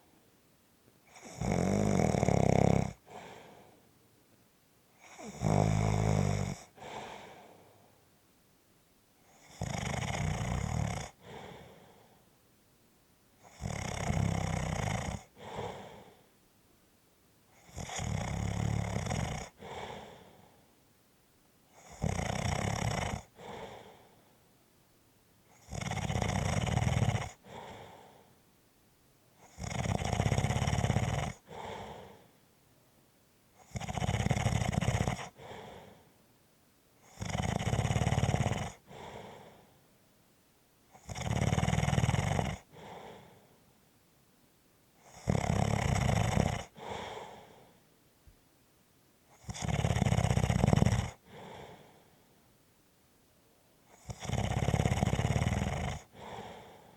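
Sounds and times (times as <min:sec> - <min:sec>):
person snoring: 0:01.1 - 0:03.7, 0:05.0 - 0:07.6, 0:09.3 - 0:12.1, 0:13.4 - 0:16.2, 0:17.6 - 0:20.4, 0:21.8 - 0:24.1, 0:25.5 - 0:28.3, 0:29.4 - 0:32.3, 0:33.6 - 0:36.0, 0:37.0 - 0:39.7, 0:41.0 - 0:43.5, 0:45.0 - 0:47.8, 0:49.3 - 0:52.0, 0:53.9 - 0:56.9.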